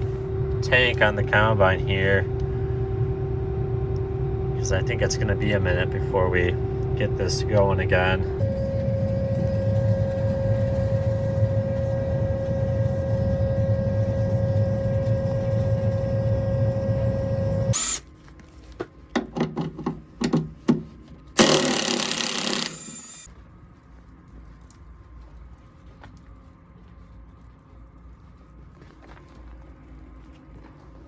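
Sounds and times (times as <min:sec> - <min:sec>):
combine harvester whining: 0:00.0 - 0:18.0, 0:21.4 - 0:23.3
loud rasping burst: 0:17.7 - 0:18.0, 0:21.4 - 0:23.3.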